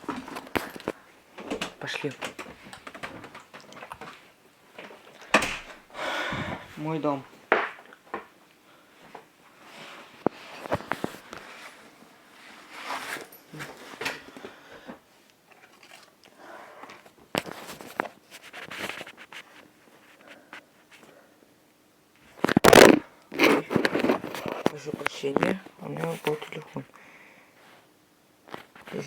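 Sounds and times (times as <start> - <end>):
phone handling clicks and rustles: 0.0 - 5.8, 22.3 - 25.8
footsteps indoors: 0.0 - 15.1.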